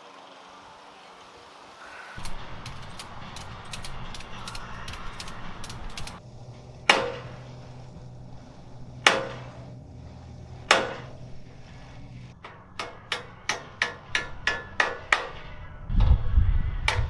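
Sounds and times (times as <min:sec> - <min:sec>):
low rumble: 0:02.2 - 0:17.0
hammer striking metal pin: 0:06.9 - 0:07.6, 0:09.0 - 0:09.8, 0:10.7 - 0:11.3, 0:12.4 - 0:15.6.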